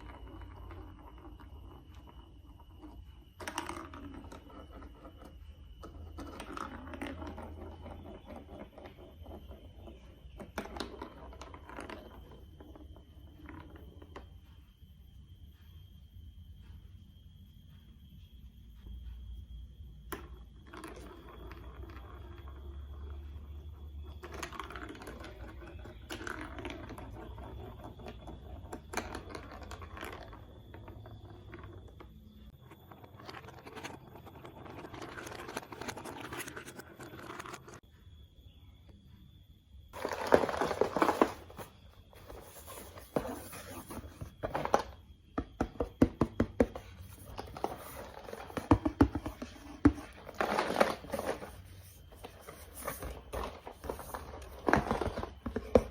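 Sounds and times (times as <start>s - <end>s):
plastic blocks scraping: 33.1s - 37.8s, 40.0s - 45.0s, 46.6s - 55.9s.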